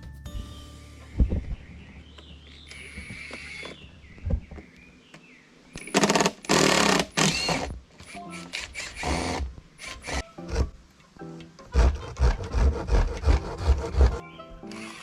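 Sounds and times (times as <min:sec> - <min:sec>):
power tool rattling: 0:05.8 - 0:10.7, 0:11.7 - 0:15.0.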